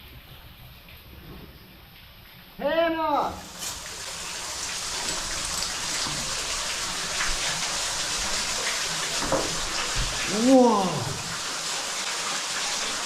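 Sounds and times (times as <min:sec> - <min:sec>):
waterfall pouring into a pit: 0:00.6 - 0:13.0.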